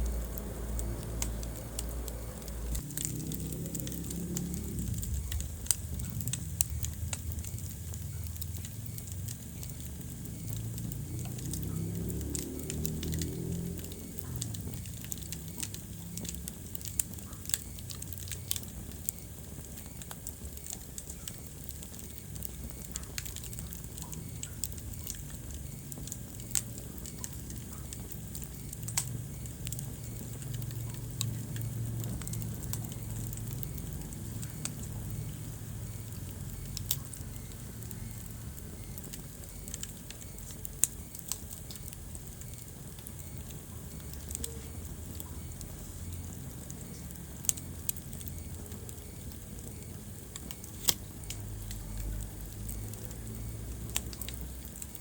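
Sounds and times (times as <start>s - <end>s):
wood fire crackling: 0.0s - 55.0s.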